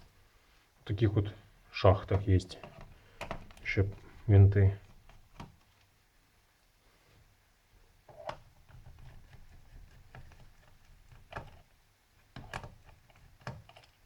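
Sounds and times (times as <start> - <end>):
faint handling noise: 0.0 - 6.0
screwdriver clicks and knocks: 12.4 - 14.0.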